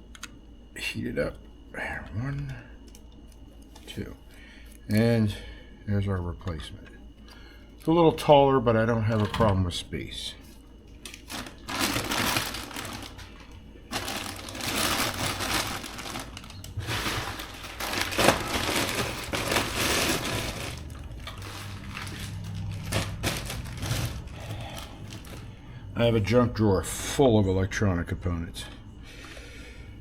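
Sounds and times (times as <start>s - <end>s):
small parts and tools clattering: 11.0s - 25.5s.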